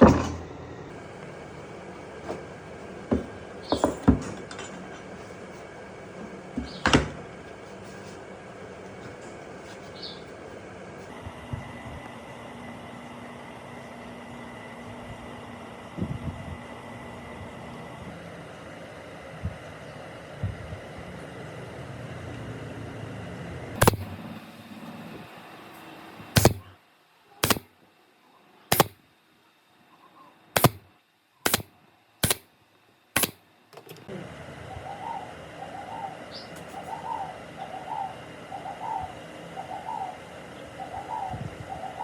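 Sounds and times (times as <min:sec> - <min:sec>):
dove cooing: 0:34.6 - 0:42.0.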